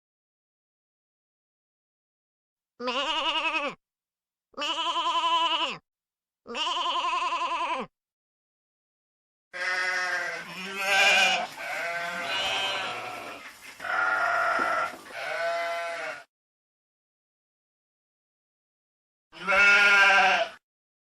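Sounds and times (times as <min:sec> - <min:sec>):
sheep bleating: 0:02.8 - 0:03.8, 0:04.6 - 0:05.8, 0:06.5 - 0:07.9, 0:09.5 - 0:16.3, 0:19.3 - 0:20.6.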